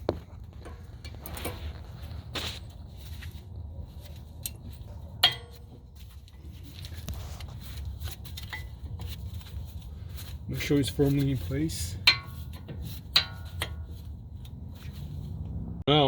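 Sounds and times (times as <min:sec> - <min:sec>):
sharp metallic clink: 0:05.2 - 0:05.8.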